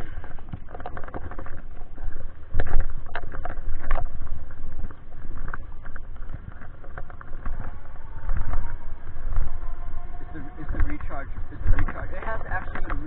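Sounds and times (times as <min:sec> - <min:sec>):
wind buffeting microphone: 0:00.0 - 0:13.0.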